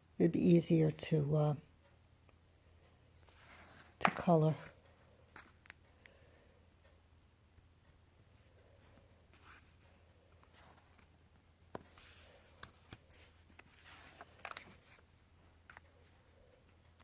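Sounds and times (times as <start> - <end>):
steady low hum: 0.0 - 17.0
paper pages rustling: 8.9 - 15.1.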